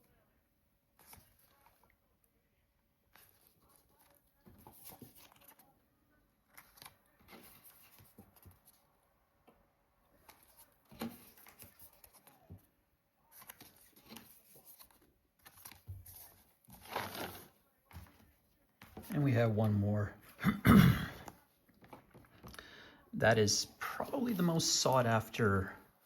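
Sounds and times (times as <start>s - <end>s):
cards and packaging rustling: 3.1s - 5.8s, 6.4s - 8.9s, 10.1s - 12.7s, 13.3s - 20.1s.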